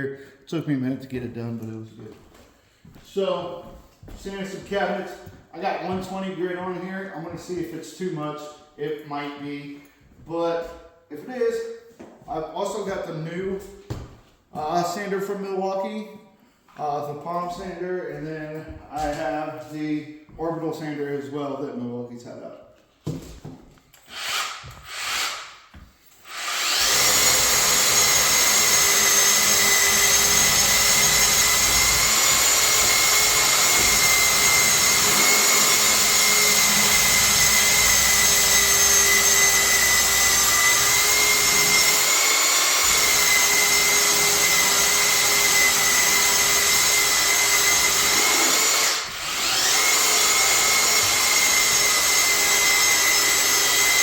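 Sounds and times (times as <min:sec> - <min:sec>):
belt sander whining: 0:26.3 - 0:54.0.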